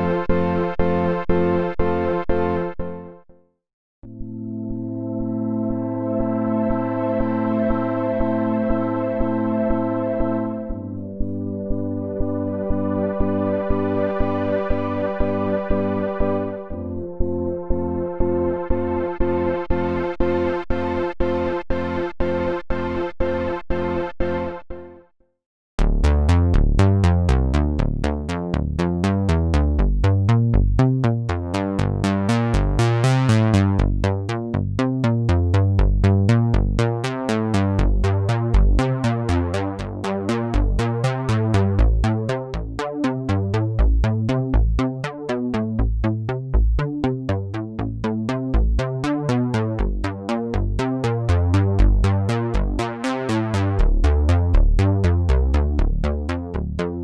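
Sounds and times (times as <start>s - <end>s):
electronic synthesizer music: 4.0s - 24.9s, 25.8s - 57.0s
heavy bass line: 25.8s - 57.0s.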